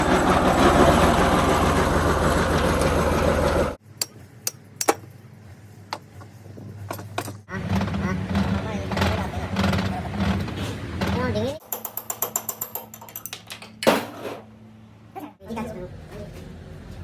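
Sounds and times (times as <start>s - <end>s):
lawn mower engine running: 0.0s - 3.8s.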